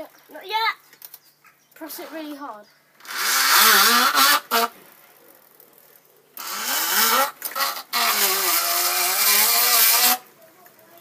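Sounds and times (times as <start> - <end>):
power tool motor whining: 6.4 - 10.2.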